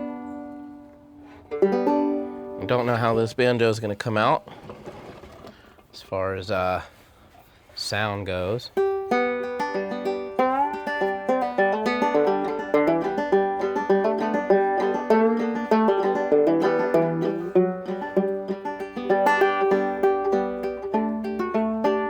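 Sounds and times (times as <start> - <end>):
banjo playing: 0.0 - 5.2, 8.6 - 22.0.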